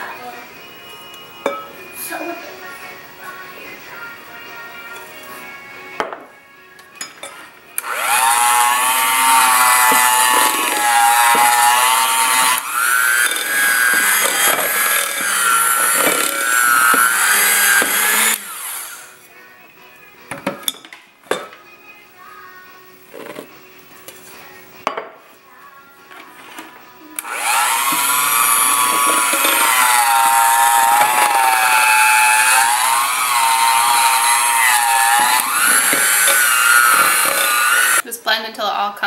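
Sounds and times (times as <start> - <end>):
electric mixer running: 7.8 - 19.2, 27.2 - 38.0.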